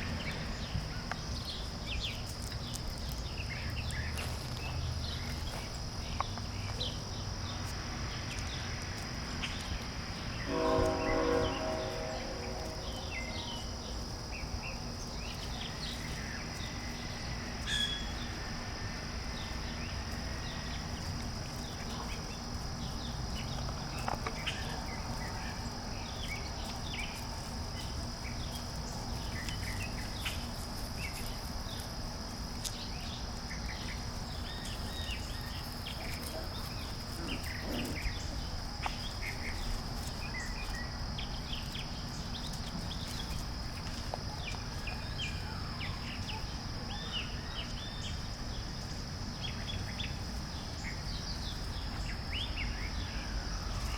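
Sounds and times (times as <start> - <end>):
puppies scratching and clicking: 2.1 - 7.0, 34.1 - 41.0, 41.6 - 44.9.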